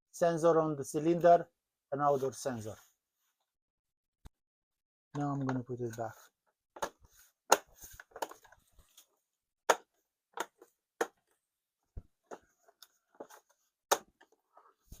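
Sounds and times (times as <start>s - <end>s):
plastic cover clicks and knocks: 13.9s - 14.4s.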